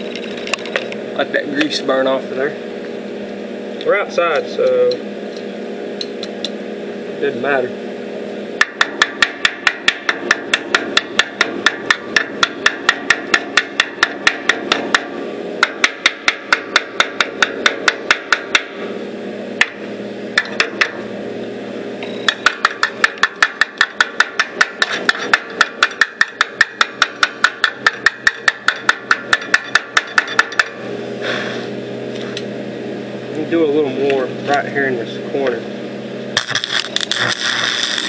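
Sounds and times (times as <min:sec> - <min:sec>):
steady hum: 0:00.0 - 0:38.0
hammer tapping on metal: 0:08.6 - 0:18.8, 0:22.2 - 0:30.8.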